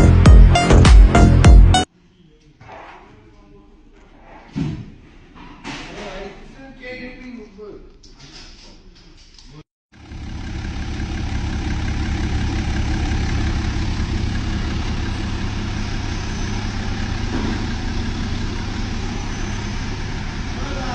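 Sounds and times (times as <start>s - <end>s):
diesel engine idling: 9.9s - 20.9s.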